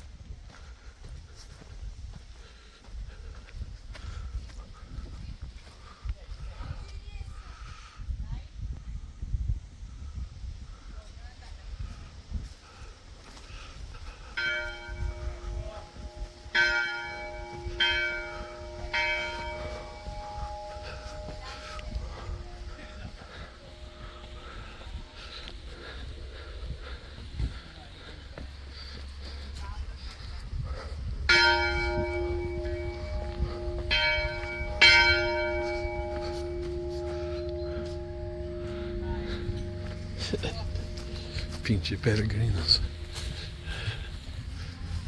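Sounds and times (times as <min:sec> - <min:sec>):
wind rumble on microphone: 0:00.0 - 0:45.0
church bell tolling: 0:14.4 - 0:25.5, 0:31.3 - 0:45.0.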